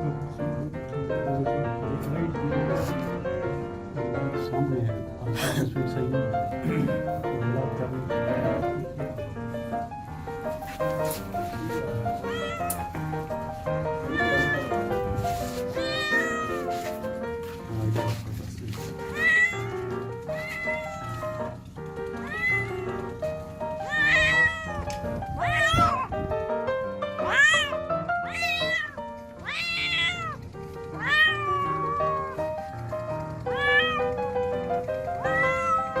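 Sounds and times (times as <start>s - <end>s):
background music with held notes: 0.0s - 36.0s
cat meowing loudly: 12.2s - 12.8s, 14.0s - 15.0s, 15.7s - 16.8s, 19.1s - 21.5s, 22.2s - 22.9s, 23.8s - 26.1s, 27.2s - 30.4s, 31.0s - 32.4s, 33.5s - 34.1s, 35.2s - 36.0s.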